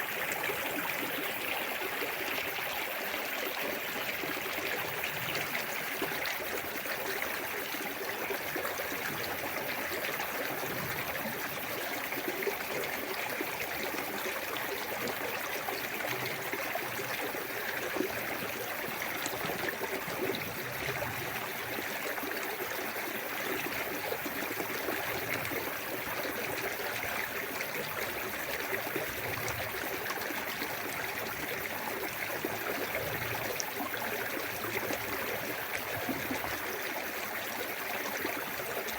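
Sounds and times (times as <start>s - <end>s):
small waterfall splashing: 0.0s - 27.6s.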